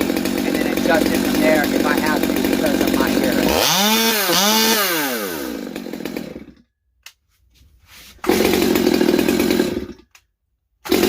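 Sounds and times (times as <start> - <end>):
chainsaw revving: 0.0 - 6.7, 8.2 - 10.1
click: 7.0 - 7.2.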